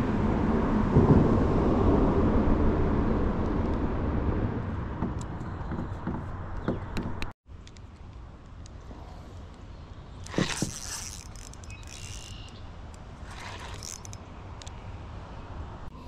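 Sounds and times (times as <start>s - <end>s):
fishing reel ratcheting: 10.2s - 14.2s.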